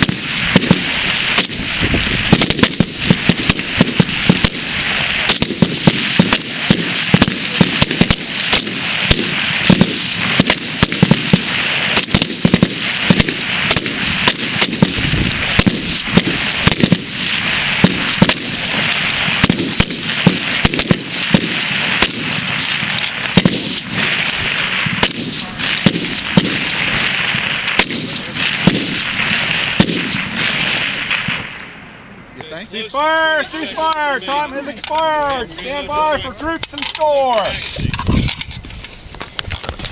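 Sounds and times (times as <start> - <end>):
gunshot echo: 0.0 - 31.8
rifles firing: 0.0 - 31.8.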